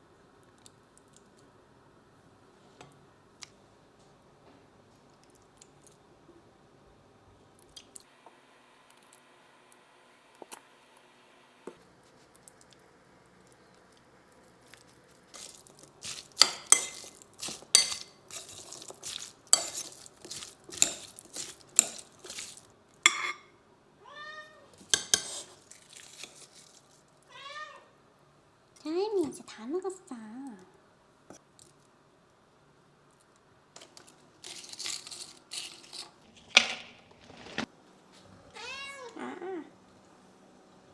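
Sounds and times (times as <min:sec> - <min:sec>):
dishes and cutlery clattering: 0:15.4 - 0:23.5, 0:24.9 - 0:25.6
cat meowing: 0:24.0 - 0:24.7, 0:27.3 - 0:27.9, 0:38.5 - 0:39.6.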